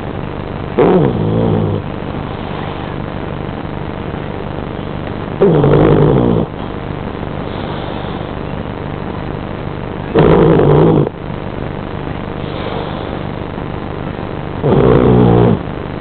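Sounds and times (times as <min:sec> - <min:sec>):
steady background hum: 0:00.0 - 0:16.0
dog snoring: 0:00.8 - 0:01.8, 0:05.4 - 0:06.6, 0:10.1 - 0:11.2, 0:14.6 - 0:15.6.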